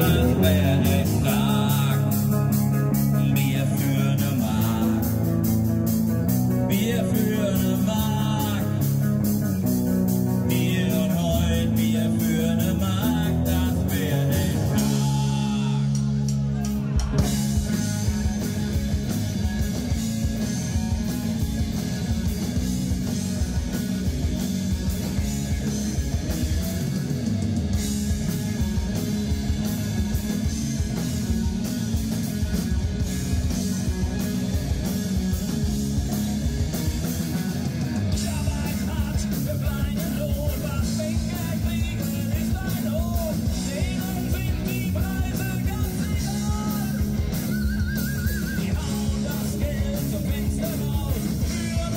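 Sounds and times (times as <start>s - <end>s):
person singing: 0.0s - 5.4s, 6.6s - 9.0s, 10.4s - 17.9s, 38.1s - 47.3s, 48.0s - 51.9s
drums at a steady beat: 0.0s - 51.9s
electric guitar: 0.0s - 51.9s.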